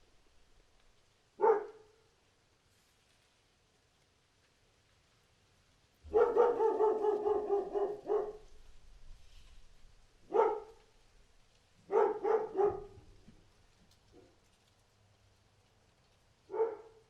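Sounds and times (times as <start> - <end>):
dog barking: 1.4 - 2.0, 6.1 - 8.6, 10.2 - 10.8, 11.8 - 13.1, 16.5 - 17.0.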